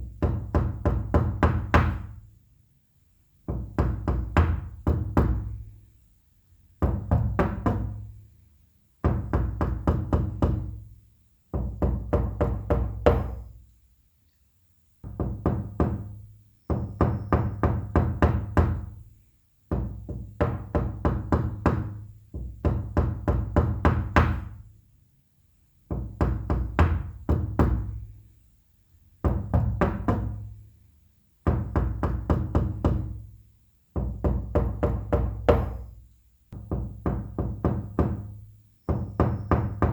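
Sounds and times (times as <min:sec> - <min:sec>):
knuckles knocking on wooden door: 0:00.0 - 0:02.2, 0:03.5 - 0:05.6, 0:06.8 - 0:08.1, 0:09.0 - 0:10.8, 0:11.5 - 0:13.5, 0:15.0 - 0:19.0, 0:19.7 - 0:24.6, 0:25.9 - 0:28.1, 0:29.2 - 0:30.5, 0:31.4 - 0:33.3, 0:34.0 - 0:39.9.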